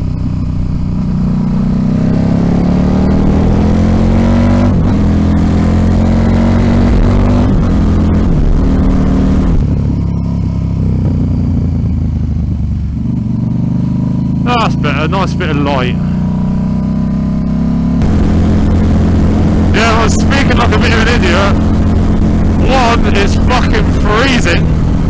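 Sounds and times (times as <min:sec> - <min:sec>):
motorcycle engine accelerating: 0:00.0 - 0:25.0.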